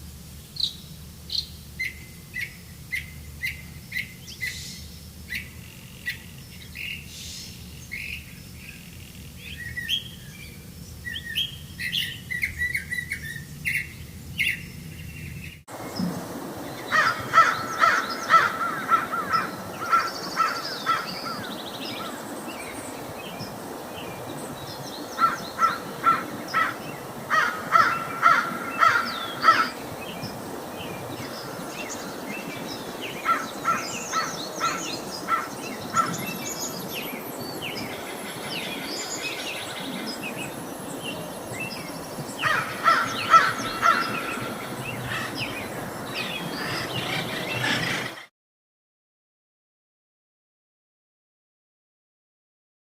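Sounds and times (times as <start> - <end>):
steady outdoor hiss: 0.0 - 48.3
birds chirping and calling: 16.8 - 48.3.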